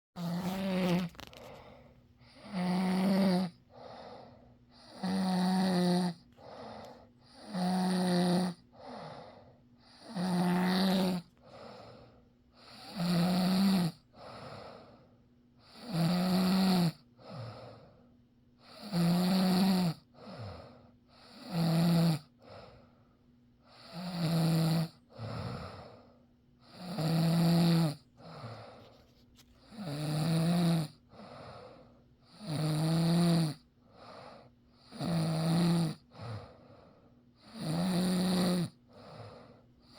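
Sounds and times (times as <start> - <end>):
rough snoring: 0.2 - 1.6, 2.3 - 3.6, 4.8 - 6.6, 7.3 - 9.1, 10.0 - 11.3, 12.6 - 14.0, 15.7 - 17.0, 18.8 - 20.4, 23.8 - 25.9, 26.7 - 28.4, 29.7 - 31.0, 32.4 - 33.6, 34.9 - 36.4, 37.5 - 39.5
soft breathing: 0.2 - 5.0, 6.2 - 7.3, 8.6 - 9.9, 11.2 - 12.6, 28.2 - 29.8, 31.0 - 32.0, 36.1 - 37.3, 38.9 - 39.9.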